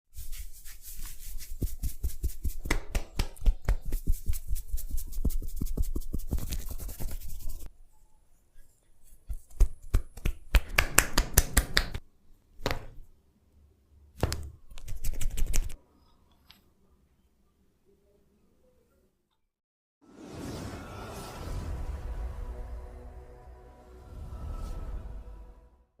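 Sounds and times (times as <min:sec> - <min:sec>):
scratching and tapping on scalp: 0:00.2 - 0:07.7, 0:09.2 - 0:12.0, 0:14.2 - 0:15.8.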